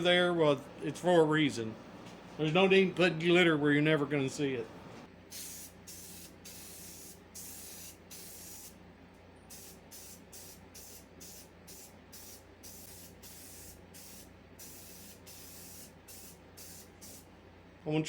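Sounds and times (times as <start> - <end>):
steady low hum: 0.0 - 18.0
spray paint hissing in bursts: 5.3 - 8.8, 9.5 - 17.3.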